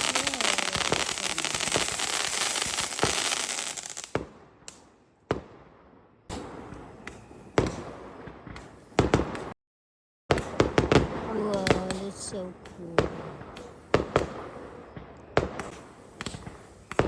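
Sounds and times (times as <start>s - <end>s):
fireworks crackling: 0.0s - 4.9s
fireworks bangs: 0.0s - 9.6s, 10.3s - 17.0s.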